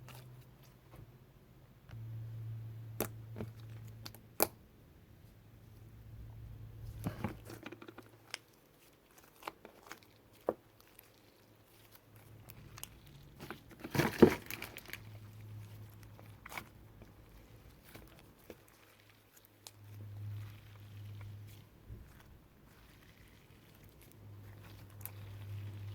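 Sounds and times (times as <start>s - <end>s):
slime squelching: 5.9s - 25.9s.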